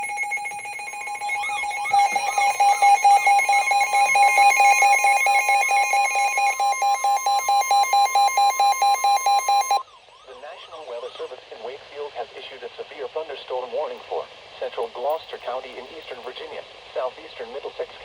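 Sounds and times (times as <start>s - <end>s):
pulsing two-tone alarm: 0.0s - 9.8s.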